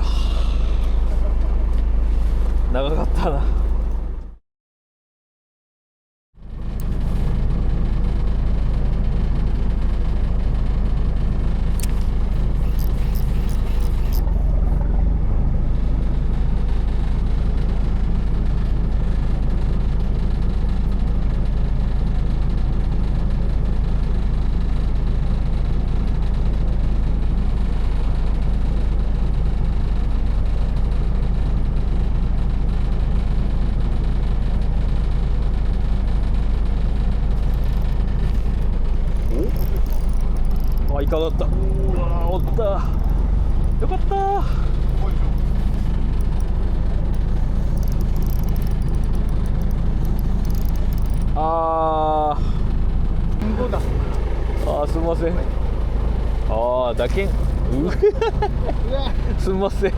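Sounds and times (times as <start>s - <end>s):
boat engine rumbling: 0.0s - 4.3s, 37.3s - 51.5s, 53.1s - 59.9s
faint sharp clicks: 37.4s - 46.6s, 47.2s - 51.3s.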